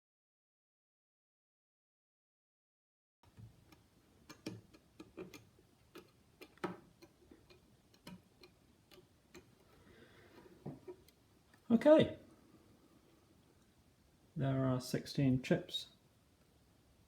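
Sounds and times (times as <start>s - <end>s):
chips pressed into sockets clicking: 3.6s - 9.7s.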